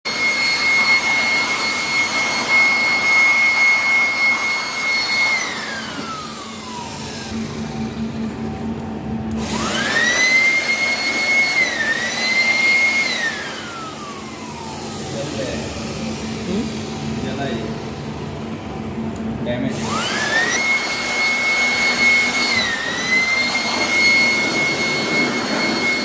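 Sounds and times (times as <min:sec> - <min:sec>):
fire alarm siren: 0:00.1 - 0:08.0, 0:20.0 - 0:26.0.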